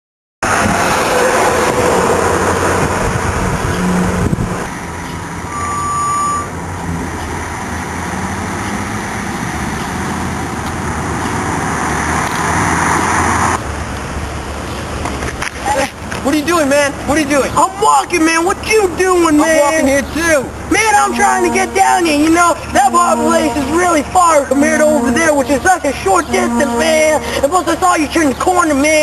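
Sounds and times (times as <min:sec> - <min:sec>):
road traffic noise: 0:00.4 - 0:29.0
short high beep: 0:05.5 - 0:06.5.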